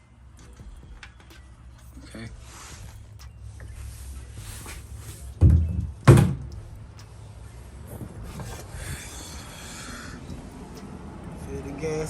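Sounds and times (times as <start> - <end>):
dull heavy thumps: 5.4 - 6.7.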